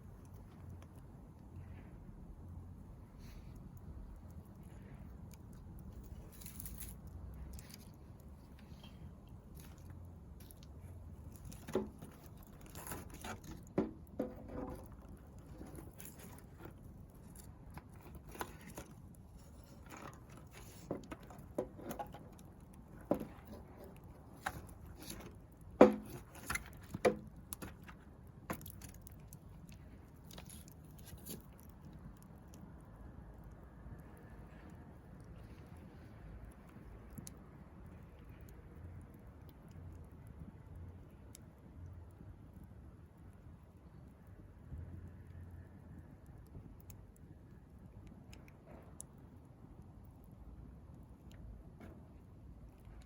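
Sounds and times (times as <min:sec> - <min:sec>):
wood fire crackling and popping: 0:00.0 - 0:35.4.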